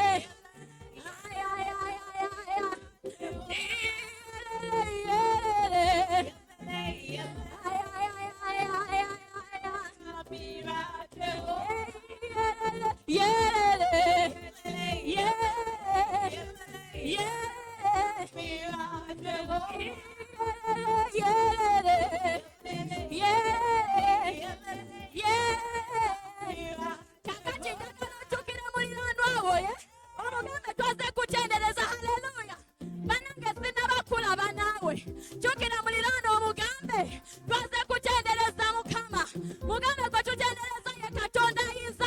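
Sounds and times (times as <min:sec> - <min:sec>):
instrumental backing: 0:00.0 - 0:42.0
person singing gospel song: 0:00.0 - 0:42.0.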